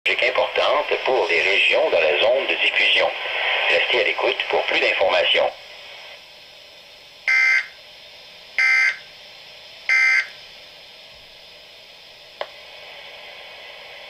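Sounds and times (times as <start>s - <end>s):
receiver hiss: 0.1s - 14.0s.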